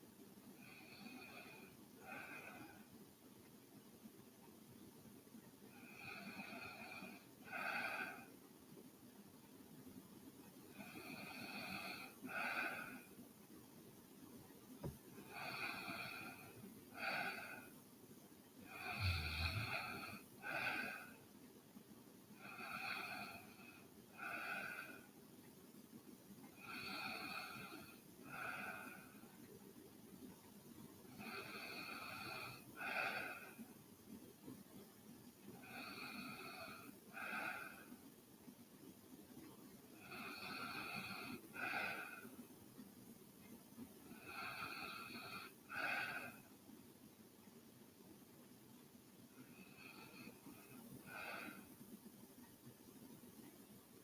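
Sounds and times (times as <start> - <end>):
woman breathing in sleep: 0.5 - 3.0, 5.7 - 8.4, 10.7 - 13.2, 14.8 - 17.8, 18.6 - 21.3, 22.4 - 25.2, 26.5 - 29.4, 31.1 - 33.7, 35.6 - 38.2, 39.9 - 42.5, 44.1 - 46.6, 49.4 - 51.8
low snore: 18.7 - 21.2.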